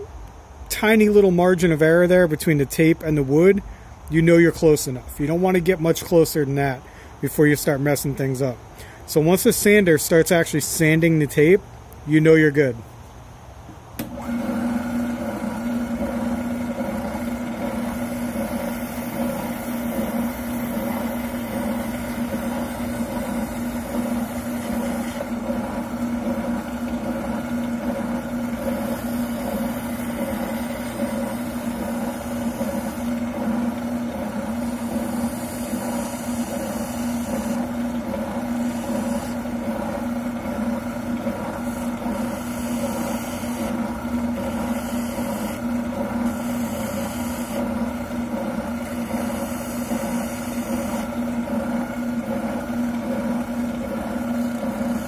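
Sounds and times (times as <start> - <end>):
oscillating sander humming: 14.0 - 55.0.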